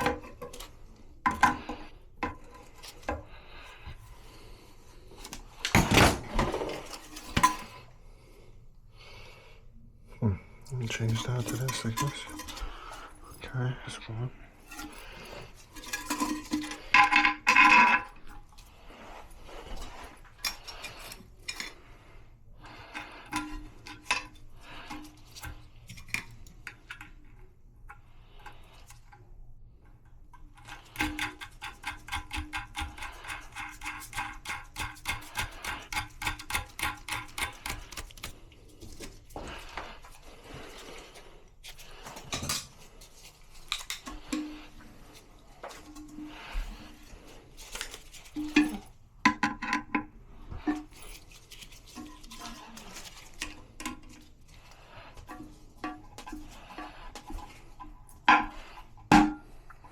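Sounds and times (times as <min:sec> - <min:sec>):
tools clinking and knocking: 0:05.2 - 0:07.8, 0:10.8 - 0:13.4, 0:14.6 - 0:18.4, 0:41.7 - 0:54.2.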